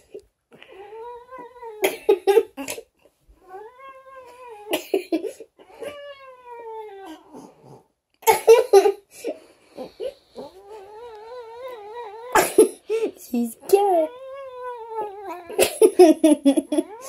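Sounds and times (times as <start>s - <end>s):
cat yowling: 14.1s - 15.6s.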